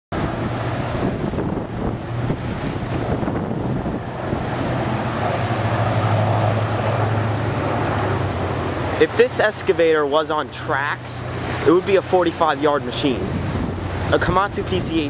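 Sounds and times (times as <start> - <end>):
wind buffeting microphone: 0.1 - 9.0, 12.6 - 15.0.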